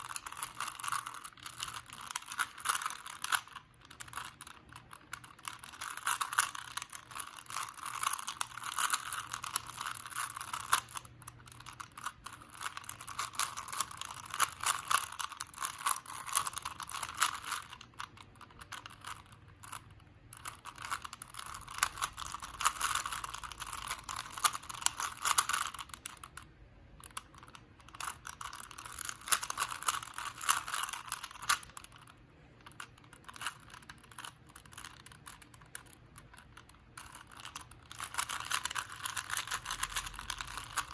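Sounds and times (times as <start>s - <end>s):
puzzle cube plastic clicking: 0.0s - 40.9s.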